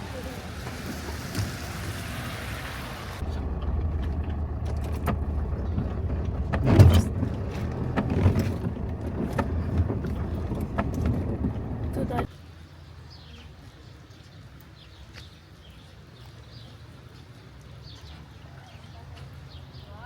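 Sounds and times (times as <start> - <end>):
vehicle rumble: 0.0 - 12.4
knocks and rattles: 3.2 - 12.3.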